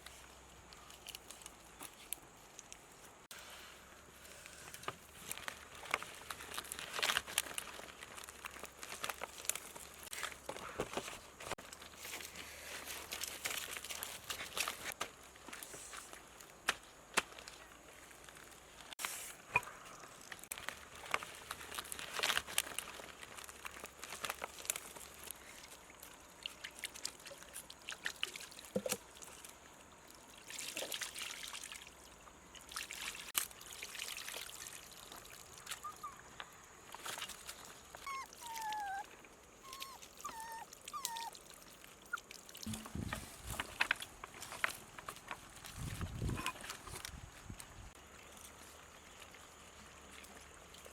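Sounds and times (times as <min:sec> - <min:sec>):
water pouring and trickling: 0:19.6 - 0:35.9, 0:36.8 - 0:47.1, 0:47.9 - 0:50.9.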